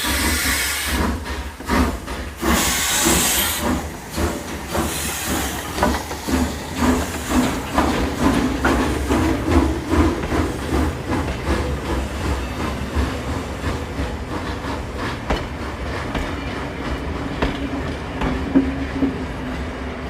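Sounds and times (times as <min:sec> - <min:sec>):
steam hiss burst: 0:00.0 - 0:08.3
steam locomotive chuffing: 0:00.0 - 0:20.0.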